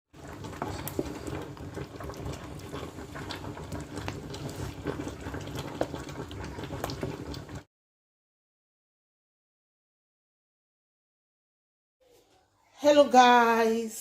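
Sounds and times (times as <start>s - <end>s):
food bubbling in a pot: 0.1s - 7.7s.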